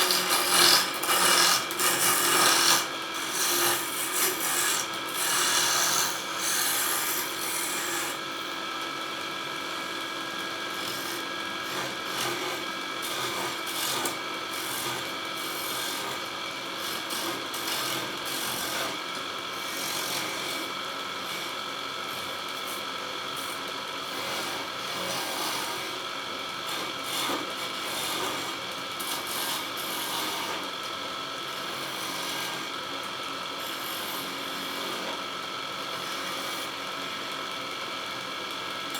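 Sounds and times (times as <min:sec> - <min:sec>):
turning tool scraping wood: 0:00.0 - 0:08.2, 0:10.7 - 0:16.2, 0:16.8 - 0:19.0, 0:26.7 - 0:30.6
lathe motor hum: 0:00.0 - 0:26.0.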